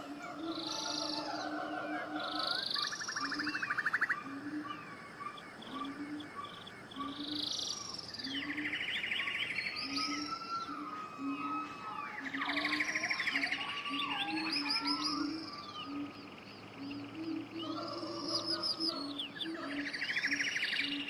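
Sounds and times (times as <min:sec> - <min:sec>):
bird trills: 0:00.0 - 0:21.0
birds chirping: 0:00.0 - 0:21.0.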